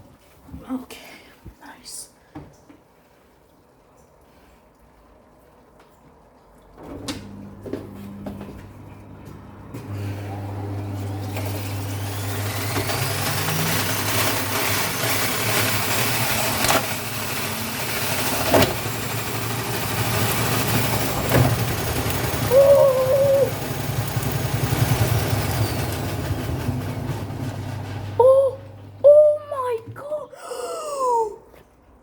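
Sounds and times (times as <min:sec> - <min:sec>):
washing machine spinning: 0:06.7 - 0:29.9
wavering hoot: 0:22.4 - 0:23.6.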